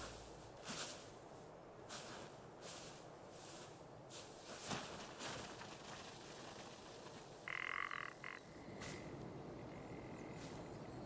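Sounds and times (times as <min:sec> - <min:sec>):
rasping croak-like animal call: 0:07.4 - 0:08.6.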